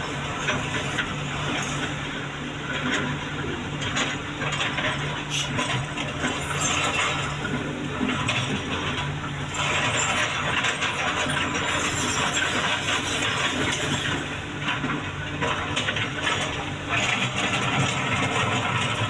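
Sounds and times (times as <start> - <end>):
excavator engine running: 0.0 - 19.0
metallic rattling and clanking: 3.8 - 19.0.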